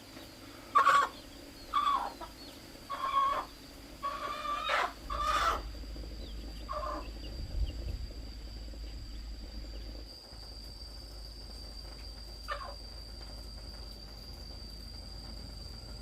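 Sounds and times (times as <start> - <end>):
high-pitched insect drone: 0.0 - 16.0
chicken clucks: 0.7 - 5.6, 6.2 - 7.2, 12.5 - 12.8.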